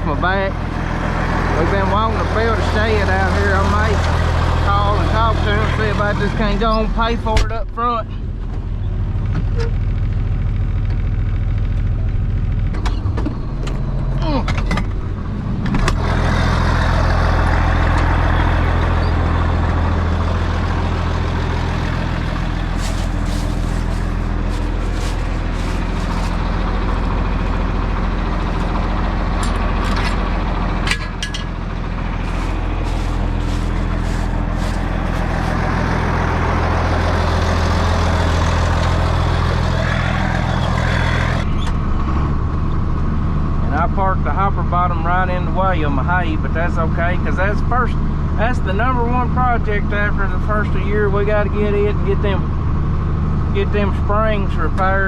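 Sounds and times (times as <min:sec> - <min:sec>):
vehicle engine droning: 0:00.0 - 0:55.0.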